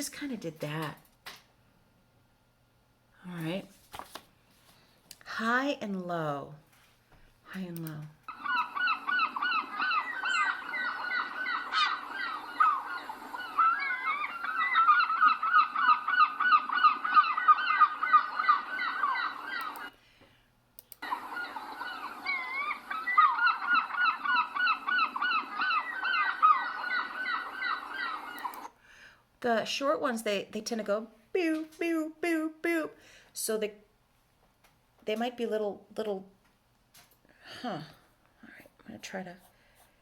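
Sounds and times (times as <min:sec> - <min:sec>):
seabirds calling: 0:08.3 - 0:19.9, 0:21.0 - 0:28.7.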